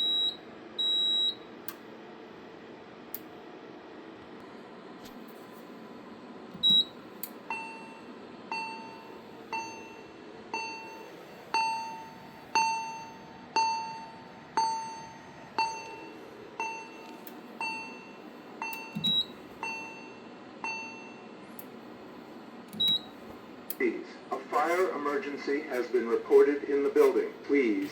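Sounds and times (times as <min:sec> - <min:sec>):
sharp high beep with thump: 0:06.6 - 0:06.9, 0:17.6 - 0:21.2, 0:22.8 - 0:23.1
bell-like alarm chime: 0:11.6 - 0:16.1.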